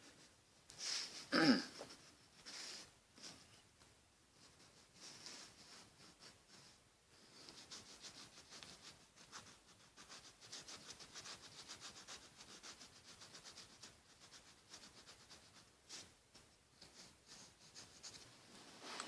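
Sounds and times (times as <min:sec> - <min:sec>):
colouring tool scratching paper: 0:04.4 - 0:18.3.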